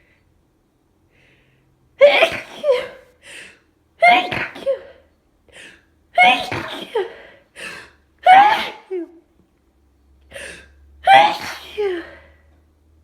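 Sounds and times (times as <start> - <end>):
person sneezing: 2.0 - 3.1, 4.0 - 5.0, 6.2 - 7.3, 8.3 - 9.1, 10.5 - 12.2.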